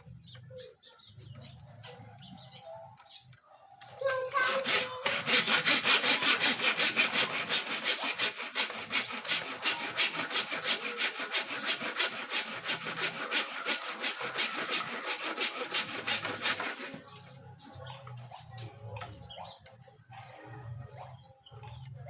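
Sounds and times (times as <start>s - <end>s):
hand saw cutting: 4.1s - 17.1s.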